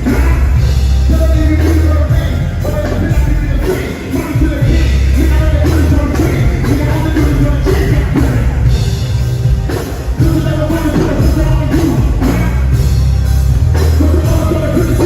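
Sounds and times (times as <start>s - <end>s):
person singing: 0.0s - 9.0s, 9.8s - 12.9s, 13.8s - 15.0s
band track with heavy bass: 0.0s - 15.0s.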